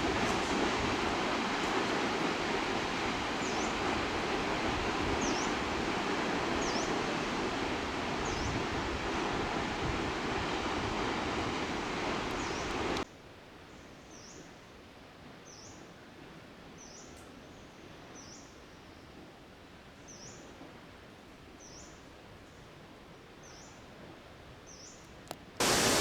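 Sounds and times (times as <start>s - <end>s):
waterfall roaring: 0.0s - 13.0s, 25.6s - 26.0s.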